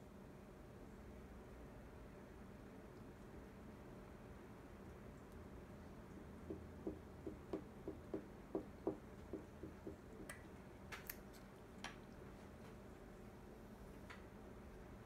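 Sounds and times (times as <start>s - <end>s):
test tube being tapped: 6.5s - 10.4s.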